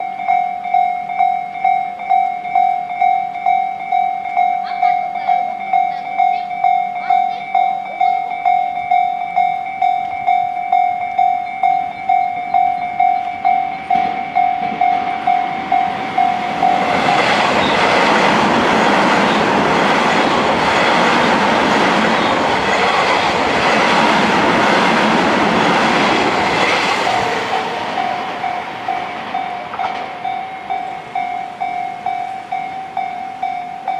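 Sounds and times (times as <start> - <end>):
level-crossing warning bell: 0.0 - 33.9
train wheels on rails: 0.0 - 33.9.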